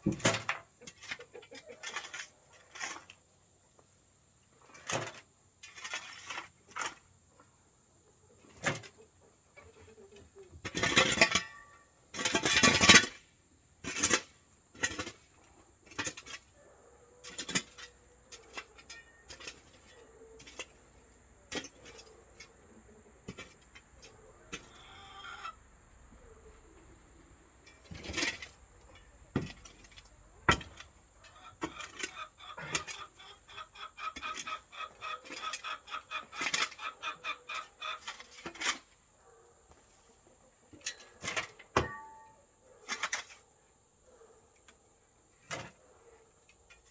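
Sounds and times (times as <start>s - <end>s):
chickens clucking: 0.1s - 3.9s, 5.8s - 11.2s, 17.2s - 43.4s
sharp knocks and clunks: 29.3s - 29.8s.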